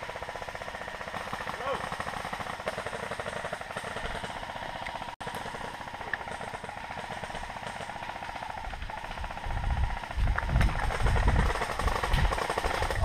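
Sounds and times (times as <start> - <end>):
airsoft gun firing full auto: 5.2 - 13.0
low rumble on microphone: 8.6 - 12.3.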